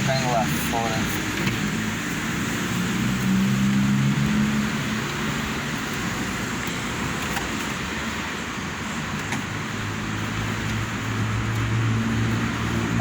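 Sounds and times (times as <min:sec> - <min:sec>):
rain falling: 0:00.2 - 0:06.6.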